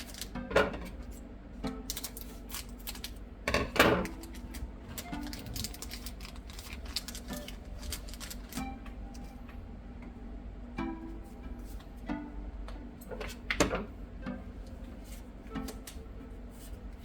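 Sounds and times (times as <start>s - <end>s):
faint background music: 0.0s - 17.0s
low steady hum: 0.0s - 17.0s
trading cards flipping: 4.1s - 9.4s.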